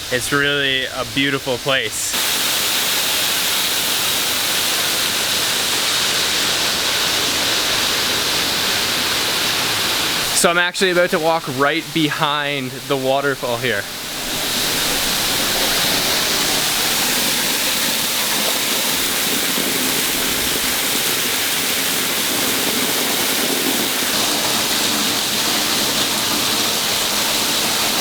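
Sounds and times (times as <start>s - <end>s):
waterfall rushing: 0.0s - 28.0s.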